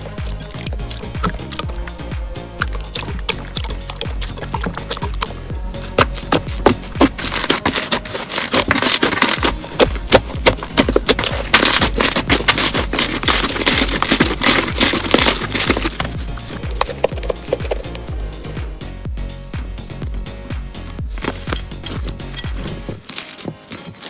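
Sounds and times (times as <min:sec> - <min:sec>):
slime crackling and popping: 0:05.9 - 0:17.8.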